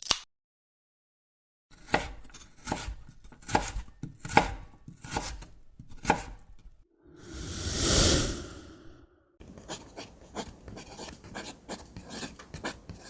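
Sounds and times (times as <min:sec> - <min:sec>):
knife chopping on cutting board: 0:01.7 - 0:06.8.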